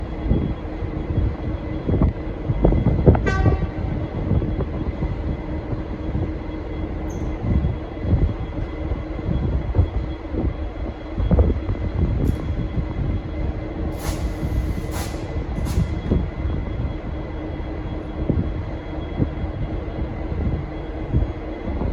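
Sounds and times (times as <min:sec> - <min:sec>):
diesel locomotive rumbling: 0:00.0 - 0:21.9.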